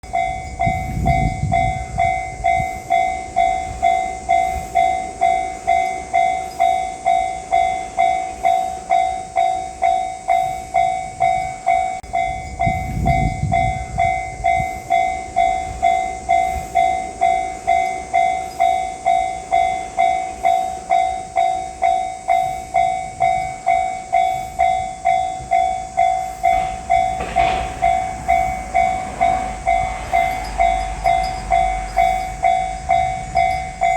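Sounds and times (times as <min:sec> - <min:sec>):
level-crossing warning bell ringing: 0:00.0 - 0:33.9
broad noise: 0:19.0 - 0:33.9
low rumbles: 0:22.8 - 0:33.9.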